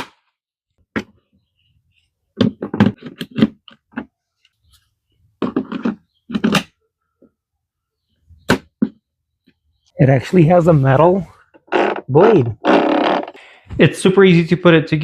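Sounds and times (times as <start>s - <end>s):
knocks and clatter of lawn mower parts: 2.4s - 4.1s.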